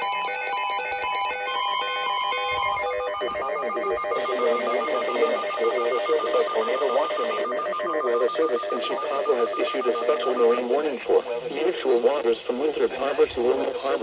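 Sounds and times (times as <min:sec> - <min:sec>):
steadily pulsing beep: 0:00.0 - 0:10.6
beeps at changing pitches: 0:02.3 - 0:10.6
wavering electronic sound: 0:02.4 - 0:10.6.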